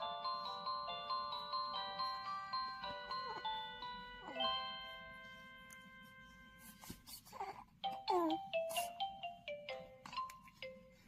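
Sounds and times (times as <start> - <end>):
glockenspiel-like mallet tune: 0.0 - 6.7.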